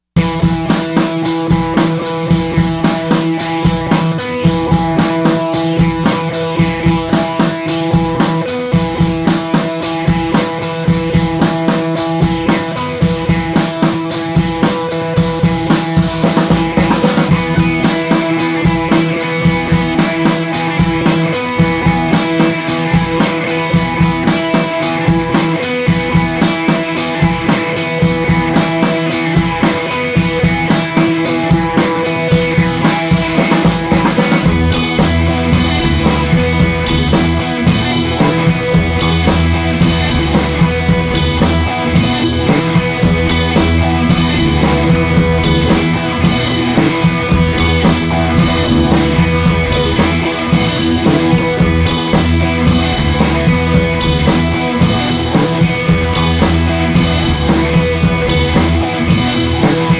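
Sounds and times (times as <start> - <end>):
drum kit beat: 0.2 - 59.9
held instrumental notes: 34.4 - 59.9.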